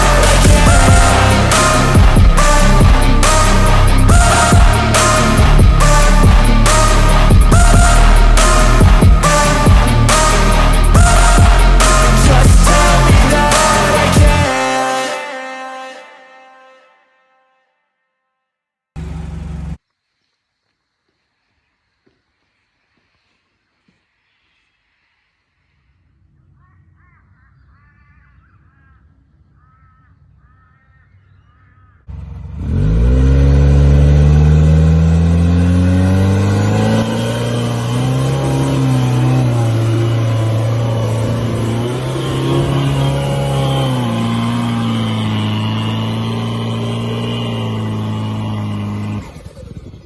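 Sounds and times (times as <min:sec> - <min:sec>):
diesel engine revving: 0:00.0 - 0:14.6, 0:19.0 - 0:19.8, 0:32.1 - 0:50.0.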